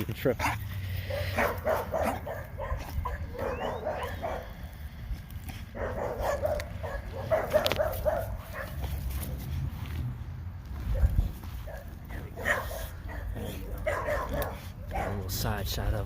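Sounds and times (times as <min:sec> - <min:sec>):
dog vocalizing: 0:00.3 - 0:04.6, 0:11.7 - 0:15.3.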